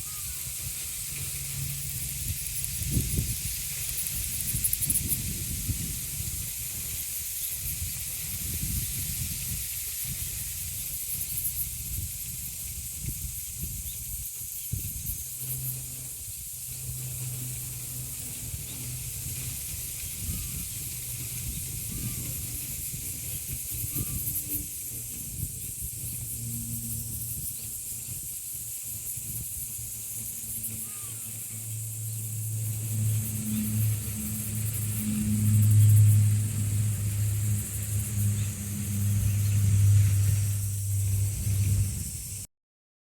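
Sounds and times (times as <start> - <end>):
cicadas singing: 0.0 - 42.5
wind buffeting microphone: 0.1 - 42.5
faint low hum: 29.5 - 42.5.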